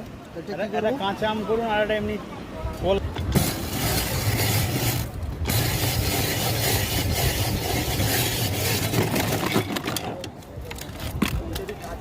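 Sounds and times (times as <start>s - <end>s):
ice shaving grinding and scraping: 3.4s - 9.8s.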